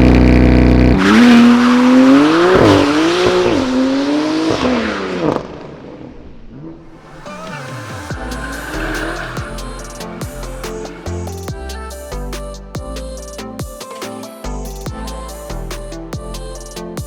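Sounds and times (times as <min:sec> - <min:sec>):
car engine revving: 0:00.0 - 0:12.8.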